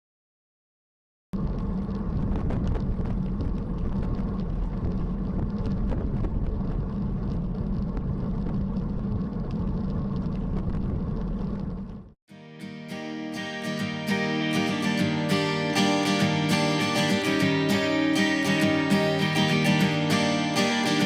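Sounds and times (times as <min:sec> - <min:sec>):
bicycle road noise: 0:01.4 - 0:12.2
rumbling wind: 0:01.4 - 0:12.2.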